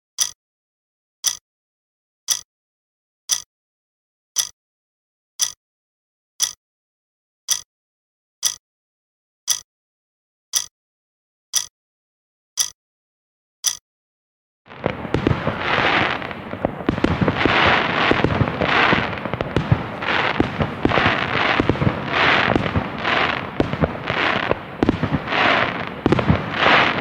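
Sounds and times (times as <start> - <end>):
countdown timer ticks: 1.2 - 1.4, 2.3 - 2.5, 4.4 - 4.6, 5.4 - 5.6, 6.4 - 6.6, 7.5 - 7.7, 9.5 - 9.7, 13.6 - 13.8, 14.8 - 27.0.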